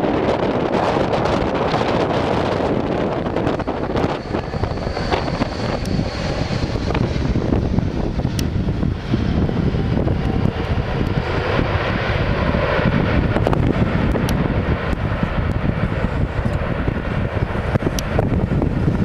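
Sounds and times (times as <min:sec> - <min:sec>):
strong wind buffeting microphone: 0:00.0 - 0:19.0.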